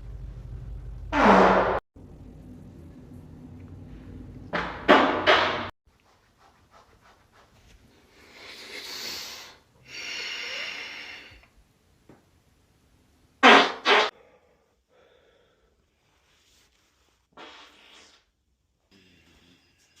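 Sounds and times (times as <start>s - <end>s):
farts: 1.1s - 1.8s, 17.3s - 18.3s.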